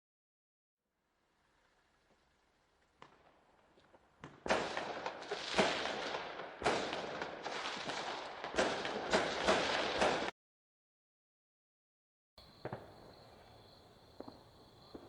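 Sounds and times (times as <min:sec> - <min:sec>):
fireworks crackling: 0:02.0 - 0:10.3
fireworks bangs: 0:03.0 - 0:10.3, 0:12.4 - 0:15.0.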